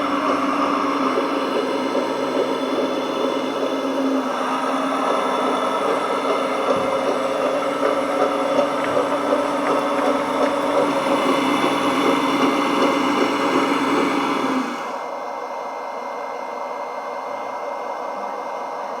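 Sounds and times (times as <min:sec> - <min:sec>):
toy bulldozer mechanical hum: 0:00.0 - 0:15.2.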